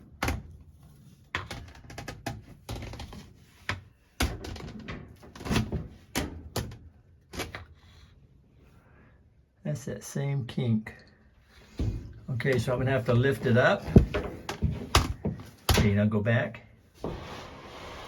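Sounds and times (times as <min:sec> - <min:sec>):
clothes dryer knocking and scraping: 0:11.7 - 0:16.0, 0:17.0 - 0:18.0.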